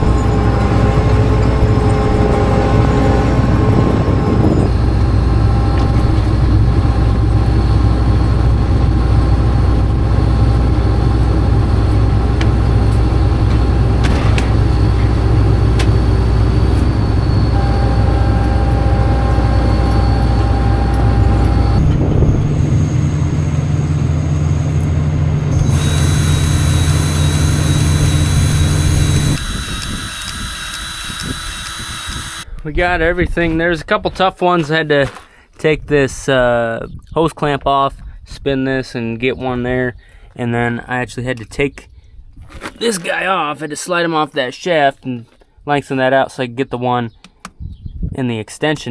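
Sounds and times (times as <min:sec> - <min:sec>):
farm machine engine idling: 0:21.8 - 0:32.4.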